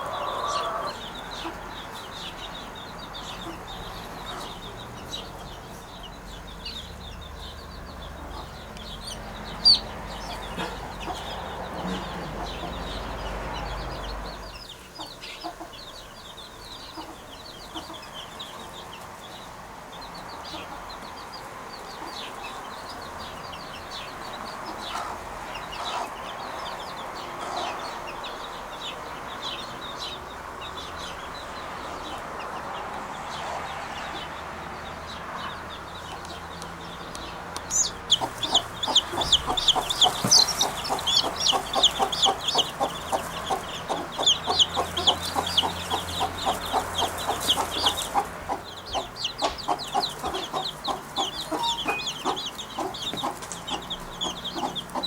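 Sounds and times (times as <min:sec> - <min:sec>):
birds chirping: 0:00.0 - 0:55.0.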